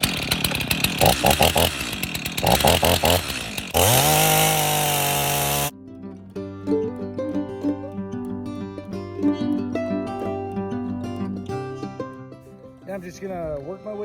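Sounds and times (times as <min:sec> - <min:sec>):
chainsaw cutting wood: 0:00.0 - 0:05.7.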